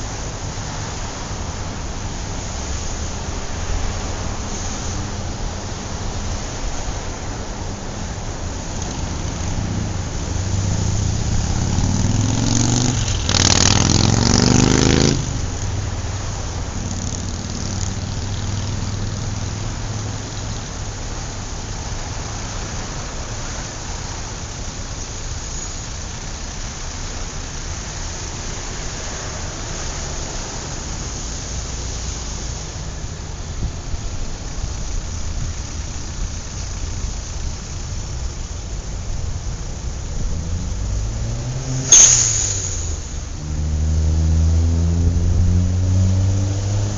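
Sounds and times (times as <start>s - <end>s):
street traffic rumble: 0.0s - 46.9s
vehicle engine revving: 8.3s - 21.0s, 36.0s - 46.9s
loud rushing noise: 39.6s - 45.6s.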